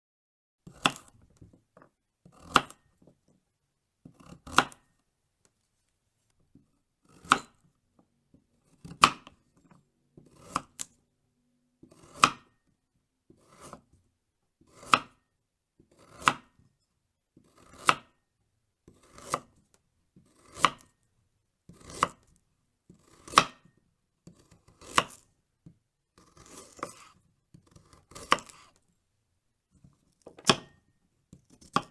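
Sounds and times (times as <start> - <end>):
knife cutting carrot: 0.7 - 1.5, 2.2 - 2.9, 4.1 - 4.9, 7.0 - 7.6, 8.6 - 11.0, 11.8 - 12.6, 13.3 - 14.0, 14.6 - 15.2, 15.9 - 16.7, 17.4 - 18.2, 18.9 - 21.0, 21.7 - 25.4, 26.2 - 28.8, 29.9 - 31.9.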